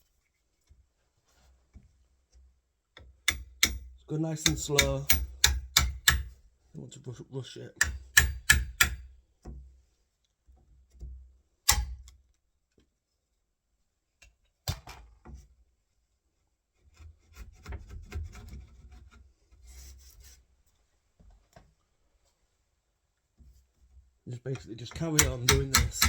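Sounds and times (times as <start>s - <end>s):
chisel scraping and paring wood: 16.8s - 20.3s, 25.0s - 26.0s
chisel taps on wood: 25.2s - 26.0s.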